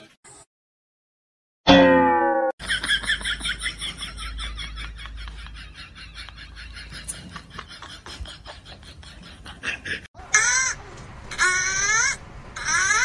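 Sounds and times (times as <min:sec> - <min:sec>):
loud wailing cries: 0:10.2 - 0:13.0.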